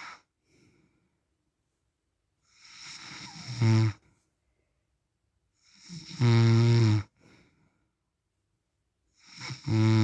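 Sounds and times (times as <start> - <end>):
faint breath: 0.0 - 1.3, 7.2 - 8.0
man snoring: 2.7 - 4.0, 5.8 - 7.0, 9.2 - 10.0.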